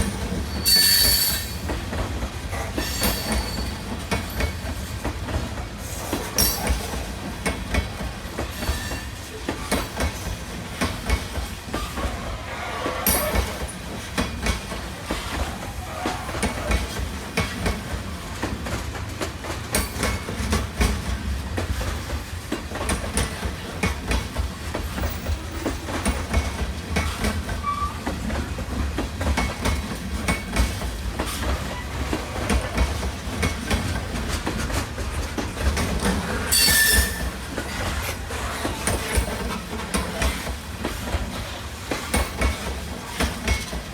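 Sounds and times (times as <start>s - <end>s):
railcars rumbling past: 0.0s - 43.9s.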